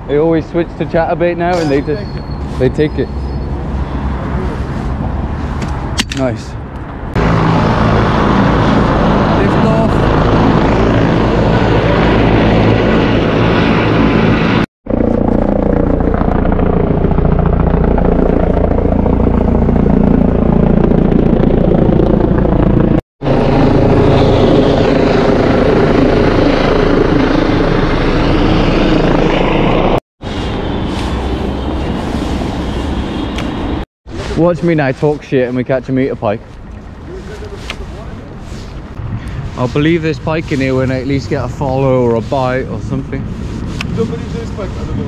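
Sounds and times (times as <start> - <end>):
drone propellers whirring: 0.8 - 34.3.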